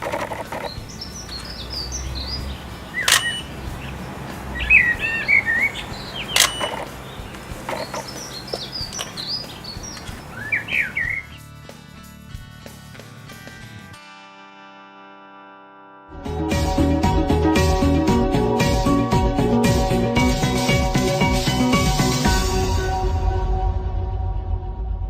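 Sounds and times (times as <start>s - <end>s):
sharp clicks: 0.0s - 1.8s, 2.4s - 11.2s
small birds chirping: 0.0s - 11.4s.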